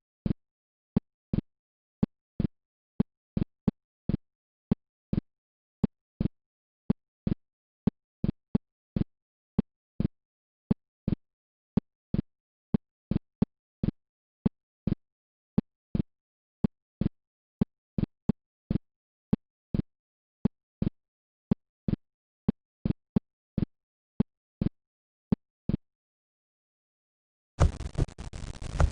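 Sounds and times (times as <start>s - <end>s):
heartbeat thuds through stethoscope: 27.6s - 28.9s.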